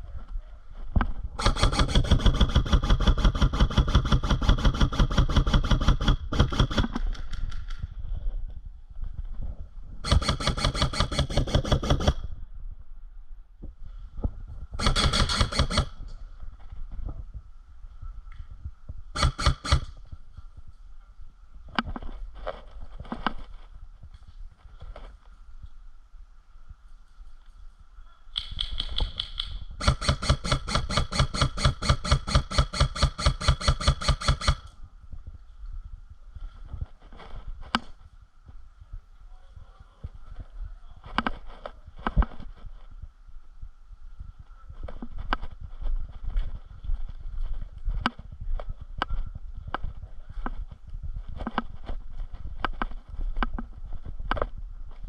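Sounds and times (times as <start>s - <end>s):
airsoft rifle full-auto bursts: 1.4s - 7.0s, 10.0s - 12.2s, 14.8s - 16.0s, 19.2s - 19.9s, 29.8s - 34.7s.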